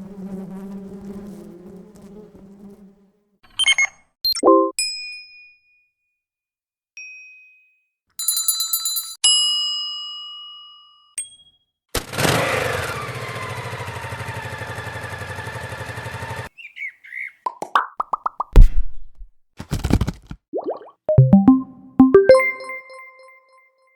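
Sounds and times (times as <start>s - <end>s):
jangle of ringing tones: 8.2s - 9.2s
bell-like ding: 22.2s - 23.6s.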